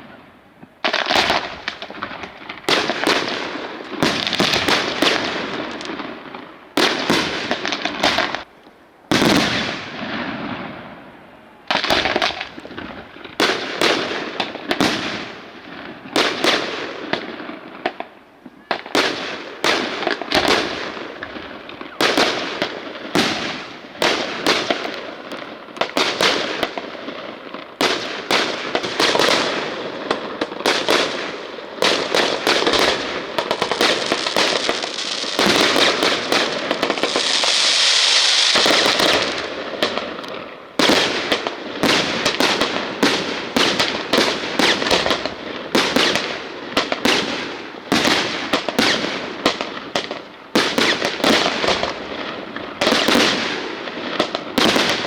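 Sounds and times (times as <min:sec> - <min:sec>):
fireworks bangs and crackles: 0:00.0 - 0:55.0
sustained firework hiss: 0:32.6 - 0:39.6.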